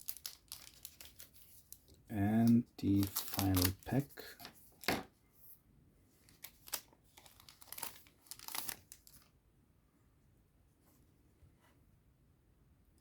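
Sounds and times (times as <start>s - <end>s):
foil wrapper crinkling and tearing: 0.0s - 1.9s, 2.5s - 4.4s, 6.3s - 9.3s.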